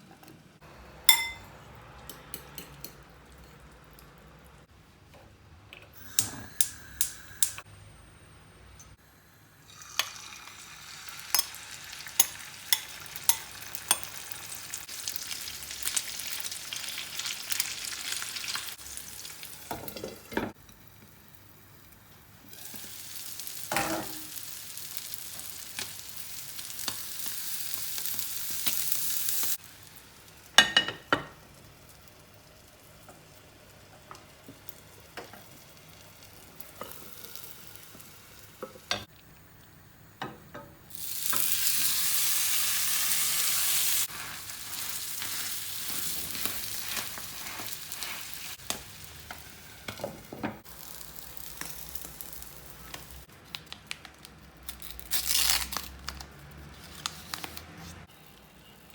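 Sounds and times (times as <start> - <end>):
food sizzling in a frying pan: 9.2 - 39.1, 40.8 - 53.3.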